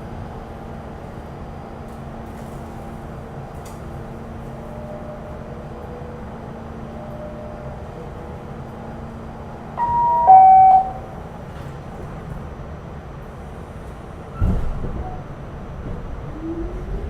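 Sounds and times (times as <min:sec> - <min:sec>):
steady hum inside subway car: 0:00.0 - 0:17.0
subway door-closing chime: 0:03.6 - 0:11.7.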